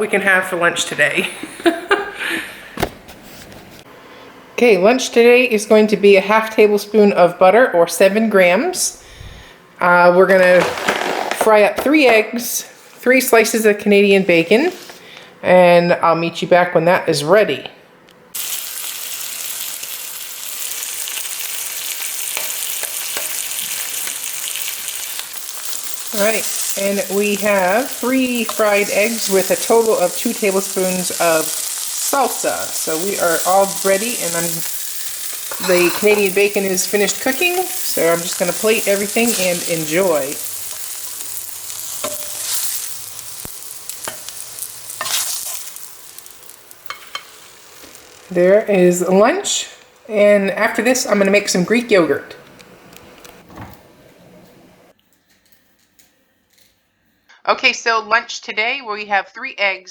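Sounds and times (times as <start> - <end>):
eggs and bacon sizzling: 10.3 - 12.0, 18.3 - 52.1
utensil scraping a pan: 43.9 - 45.9.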